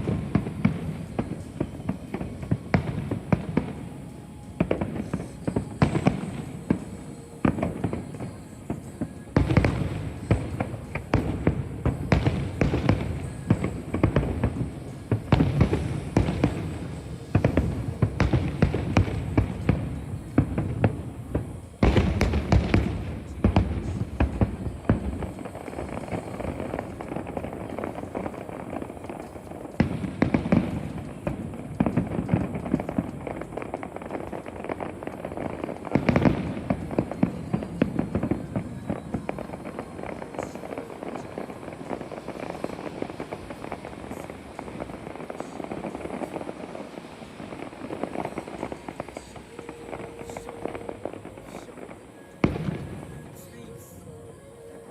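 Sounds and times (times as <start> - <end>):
fireworks bursting and crackling: 0.0 - 54.9.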